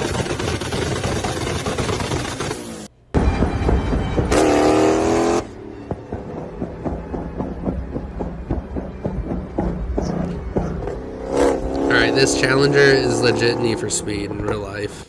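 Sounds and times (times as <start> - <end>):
car engine revving: 0.0 - 15.0
exhaust pops and crackles: 0.0 - 15.0
lumpy engine idle: 5.5 - 14.9.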